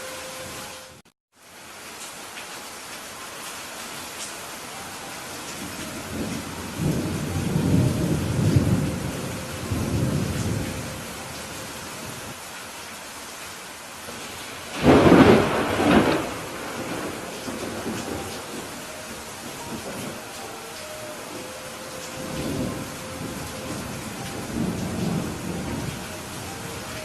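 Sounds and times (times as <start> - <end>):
steady rainfall: 0.0 - 27.0
rolling thunder: 5.6 - 11.3, 14.1 - 20.3, 22.2 - 27.0
sharp thunderclap: 14.2 - 18.7.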